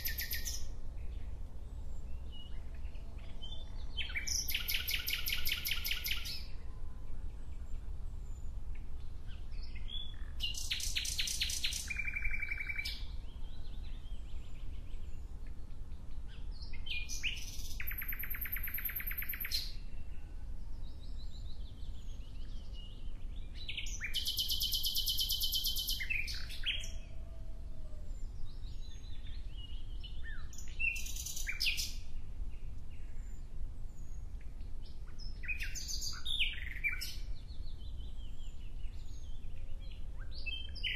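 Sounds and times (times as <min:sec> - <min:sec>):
songbird trilling: 0:00.0 - 0:00.7, 0:04.0 - 0:06.4, 0:09.9 - 0:13.0, 0:16.9 - 0:19.7.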